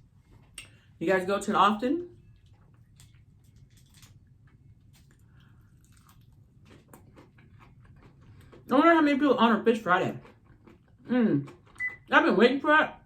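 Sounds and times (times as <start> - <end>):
chewing fried food: 0.0 - 1.0, 2.1 - 12.1.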